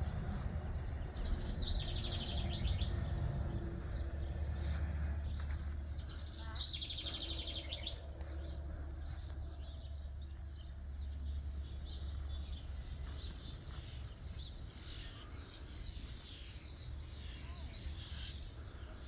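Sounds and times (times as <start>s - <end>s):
steady low rumble: 0.0s - 13.5s
small birds chirping: 0.0s - 19.0s.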